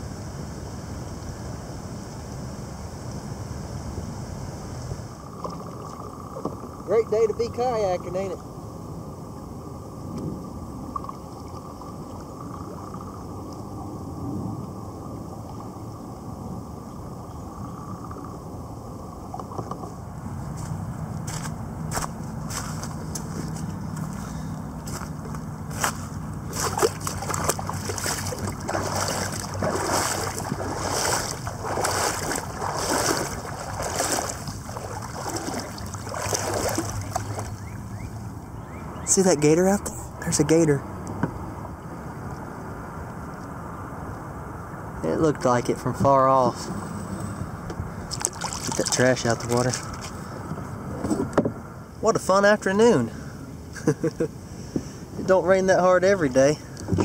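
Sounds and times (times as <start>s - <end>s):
steady low hum: 0.0s - 57.0s
water washing against kayak: 25.2s - 37.7s, 48.0s - 50.4s.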